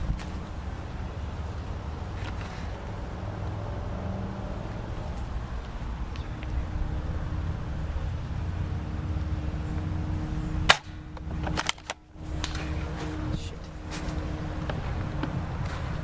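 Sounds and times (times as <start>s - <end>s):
steady low rumble: 0.0s - 16.0s
airsoft rifle shot snap: 10.7s - 12.6s.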